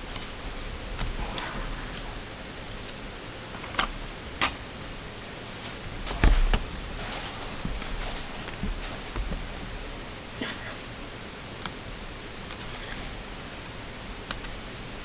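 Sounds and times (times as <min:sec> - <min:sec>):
steady hiss: 0:00.0 - 0:15.0
laptop parts and tools clicking: 0:14.2 - 0:14.6.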